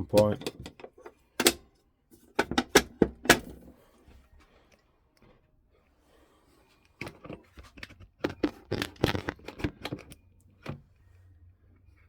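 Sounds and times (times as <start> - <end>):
handling clicks and knocks: 0.0 - 1.6, 2.3 - 3.8, 7.0 - 10.8.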